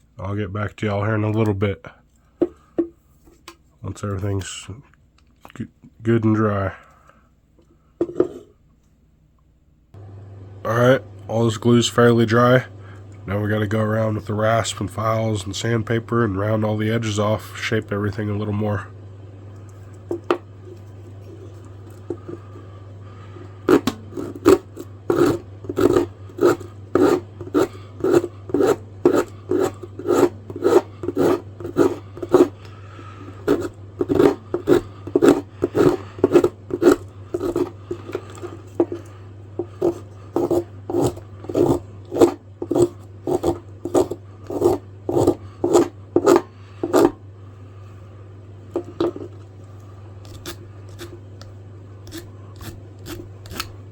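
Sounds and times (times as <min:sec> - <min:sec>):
steady low hum: 0:00.0 - 0:53.9
rasp strokes on wood: 0:23.7 - 0:32.6, 0:33.3 - 0:47.2, 0:52.1 - 0:53.7.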